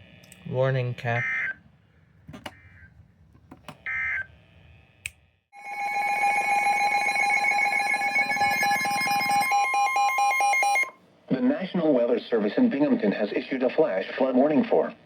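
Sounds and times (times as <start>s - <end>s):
data tones burst: 5.6s - 10.9s
two-tone alert blare: 5.6s - 11.0s.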